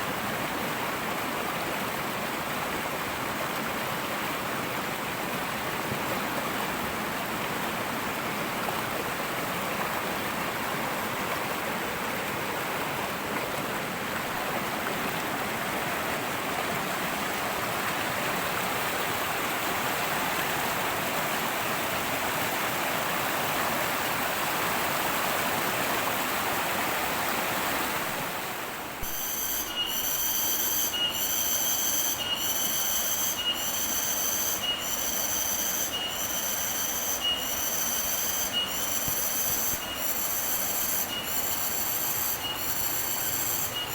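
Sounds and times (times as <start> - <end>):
river rushing: 0.0 - 43.9
cicada buzzing: 29.0 - 43.9.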